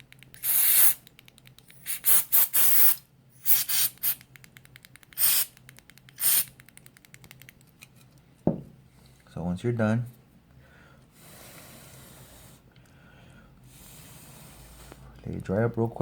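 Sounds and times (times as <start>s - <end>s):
aerosol spray hissing spurts: 0.4s - 1.1s, 1.7s - 4.2s, 5.2s - 5.6s, 6.2s - 6.6s.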